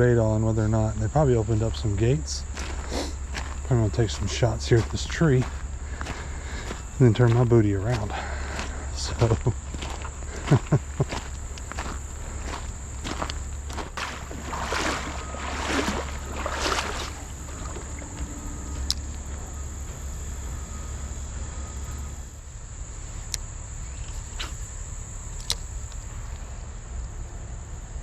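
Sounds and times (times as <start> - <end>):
high-pitched insect drone: 0.0 - 26.7
wading steps through water: 1.3 - 19.6.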